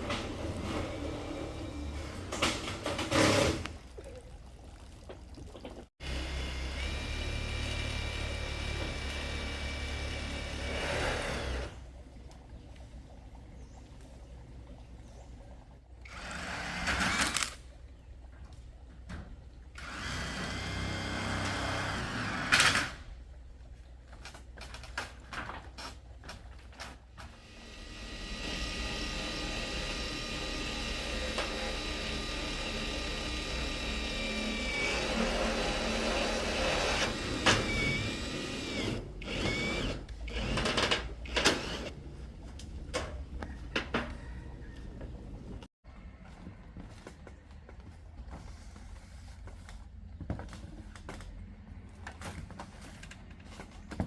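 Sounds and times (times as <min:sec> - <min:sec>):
small power tool motor: 0:06.0 - 0:11.7, 0:16.1 - 0:17.6, 0:27.3 - 0:41.9.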